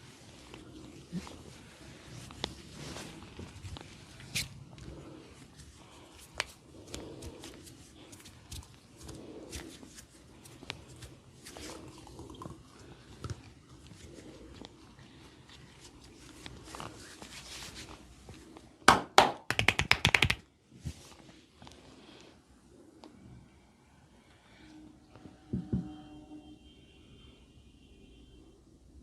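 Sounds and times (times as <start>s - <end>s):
hand slaps on body: 18.9s - 20.4s
quick percussive claps: 18.9s - 20.4s.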